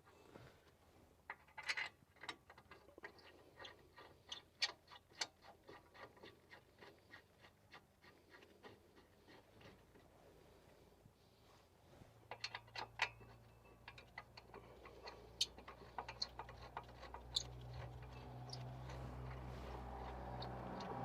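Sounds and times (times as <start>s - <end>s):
metallic clicks of hand tools: 12.3s - 21.0s.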